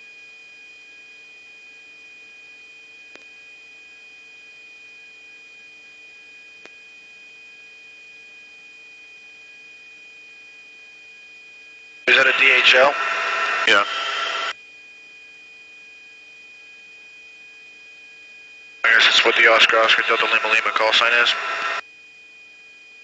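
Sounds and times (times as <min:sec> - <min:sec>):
electronic hum with high whine: 0:11.5 - 0:15.8, 0:16.7 - 0:23.0.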